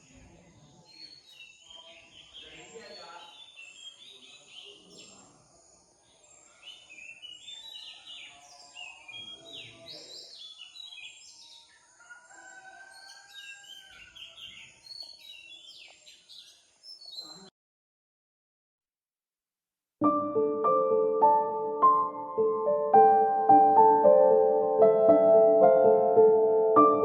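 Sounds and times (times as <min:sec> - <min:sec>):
birds chirping: 0:00.0 - 0:17.5.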